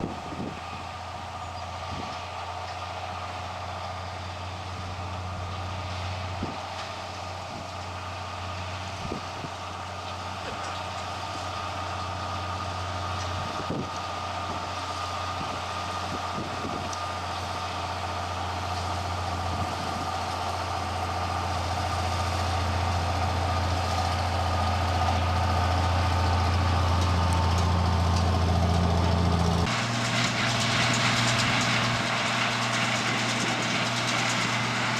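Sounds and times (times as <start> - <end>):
tractor engine droning: 0.0 - 34.9.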